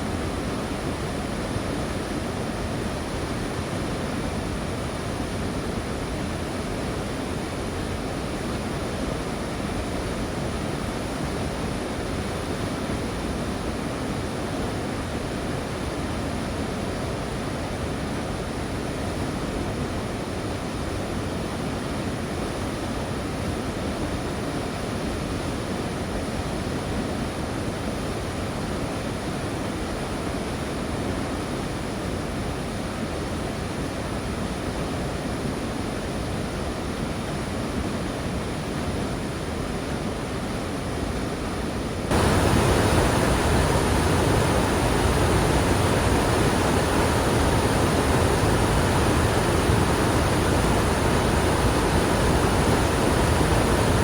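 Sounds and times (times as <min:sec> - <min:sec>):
steady rushing noise: 0:42.1 - 0:54.0.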